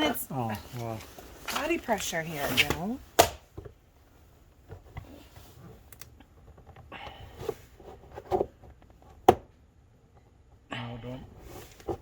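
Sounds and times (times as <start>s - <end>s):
sharp loud plastic snap: 3.2s - 3.5s.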